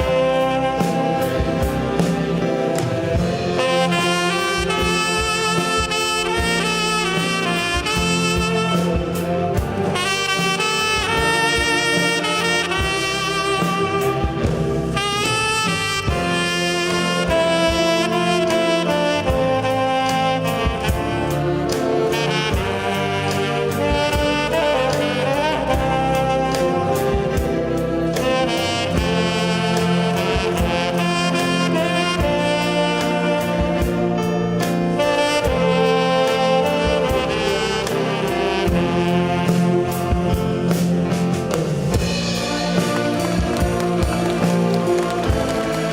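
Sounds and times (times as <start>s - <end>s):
saxophone ensemble: 0.0s - 45.9s
tenor saxophone melody: 0.0s - 45.9s
steady beat: 40.2s - 45.9s
drum hits: 41.2s - 45.9s.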